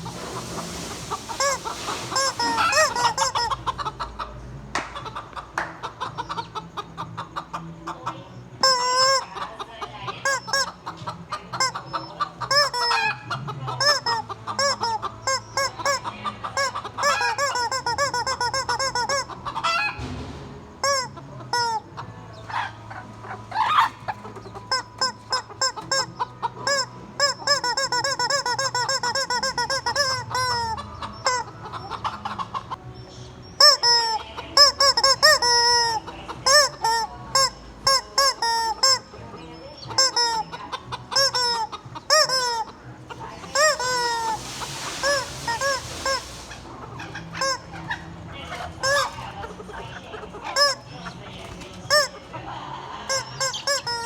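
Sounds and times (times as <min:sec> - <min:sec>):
chickens clucking: 0:00.0 - 0:54.0
squeeze-toy chicken squawks: 0:01.1 - 0:03.8, 0:08.6 - 0:09.4, 0:10.2 - 0:10.8, 0:11.5 - 0:20.0, 0:20.8 - 0:22.7, 0:23.5 - 0:32.7, 0:33.6 - 0:39.2, 0:39.8 - 0:42.8, 0:43.5 - 0:51.2, 0:51.9 - 0:52.2, 0:53.1 - 0:54.0.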